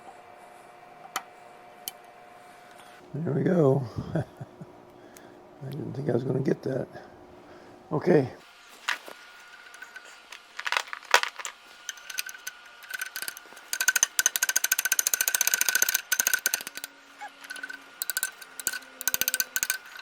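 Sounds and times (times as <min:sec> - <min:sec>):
metal parts clicking and rattling: 0:08.8 - 0:20.0.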